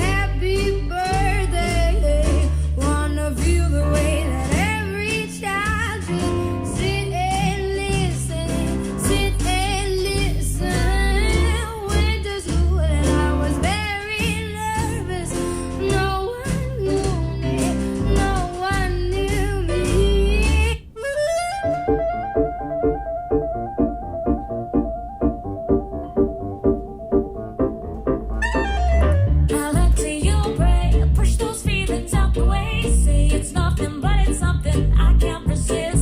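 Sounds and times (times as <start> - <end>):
song with vocals guitar and bass: 0.0 - 20.9, 21.7 - 36.0
woodwind and strings music: 21.0 - 29.7.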